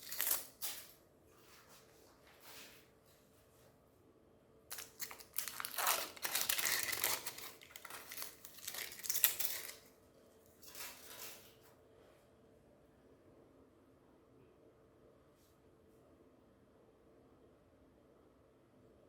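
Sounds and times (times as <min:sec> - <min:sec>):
candy wrappers crinkling: 0:00.0 - 0:00.9, 0:04.7 - 0:09.9.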